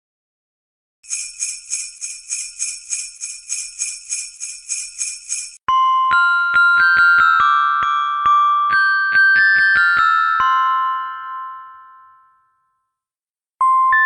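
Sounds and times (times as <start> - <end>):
sleigh bells shaken: 1.0 - 5.6.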